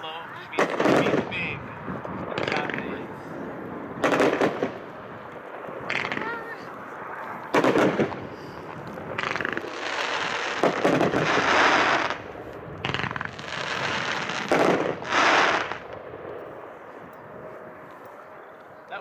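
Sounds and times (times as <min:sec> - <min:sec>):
firework shots: 0:00.4 - 0:16.4
firework effects rushing noise: 0:00.5 - 0:04.9, 0:07.5 - 0:16.3.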